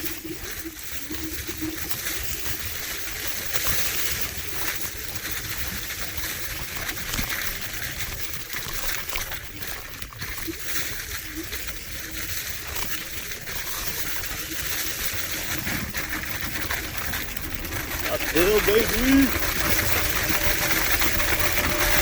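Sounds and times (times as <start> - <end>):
tyres hissing on ground: 17.9 - 19.9.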